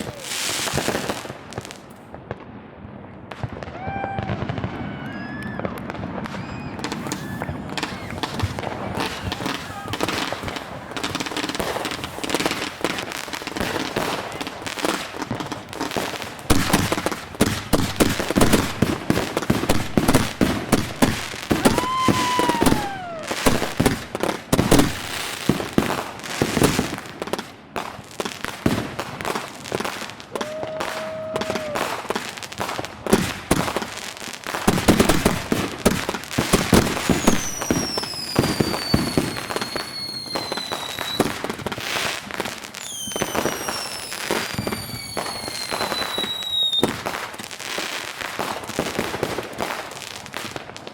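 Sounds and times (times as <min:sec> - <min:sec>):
fireworks bangs and crackles: 0:00.0 - 0:50.9
firework whistles gliding down: 0:03.6 - 0:12.7, 0:21.0 - 0:24.0, 0:30.3 - 0:32.1, 0:36.7 - 0:41.4, 0:42.7 - 0:47.0.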